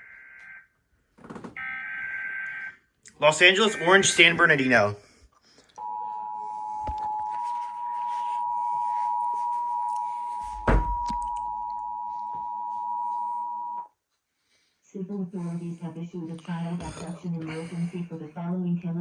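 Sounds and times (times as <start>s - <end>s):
two-tone alarm: 0.0s - 0.7s, 1.6s - 4.8s, 5.8s - 13.9s
thump: 10.5s - 11.2s.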